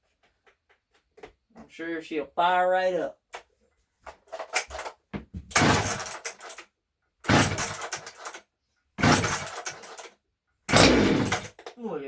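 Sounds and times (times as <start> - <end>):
chainsaw pull-start bursts: 5.5 - 6.6, 7.3 - 8.4, 9.0 - 10.1, 10.7 - 11.7.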